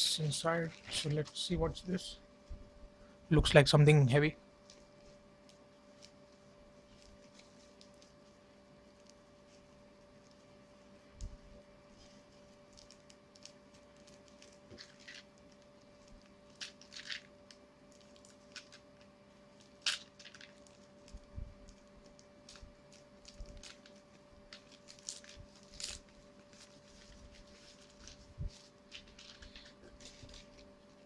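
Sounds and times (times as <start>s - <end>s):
steady low hum: 0.0s - 31.0s
package crinkling and clicking: 12.7s - 30.7s.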